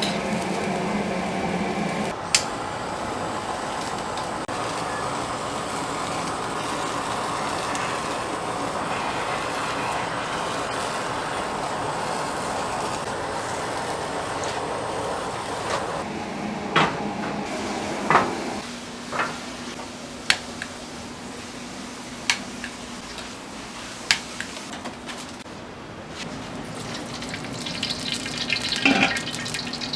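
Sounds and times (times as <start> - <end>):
rushing kitchen noise: 0.0 - 29.9
metal or dishes clanking: 28.8 - 29.3.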